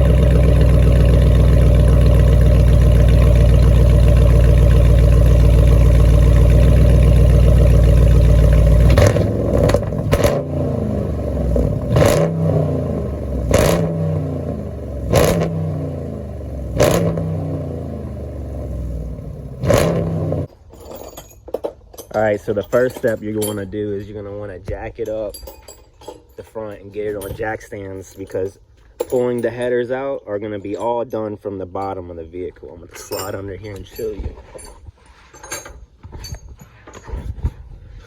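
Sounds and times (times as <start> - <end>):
car engine idling and revving: 0.0 - 20.5.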